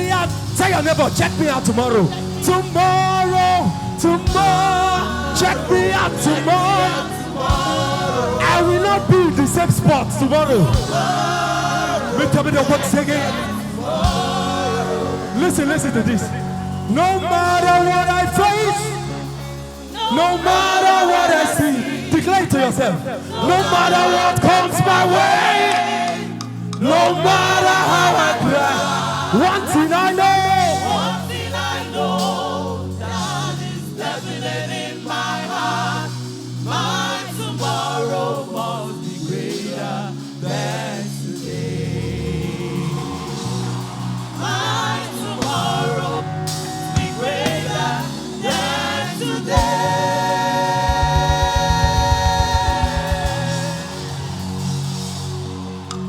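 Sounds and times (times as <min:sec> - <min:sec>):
gospel choir singing with band: 0:00.0 - 0:56.0
rapid low drum roll: 0:49.6 - 0:54.6.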